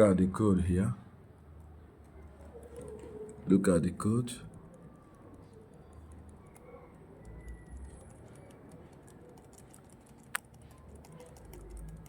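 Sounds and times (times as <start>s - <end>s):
computer keys clicking: 4.5s - 12.0s.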